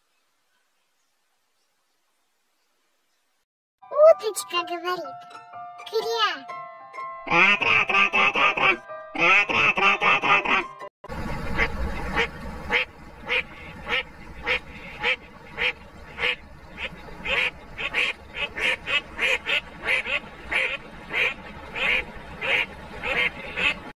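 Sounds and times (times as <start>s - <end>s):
duck quacking: 7.3s - 10.8s, 11.6s - 23.9s.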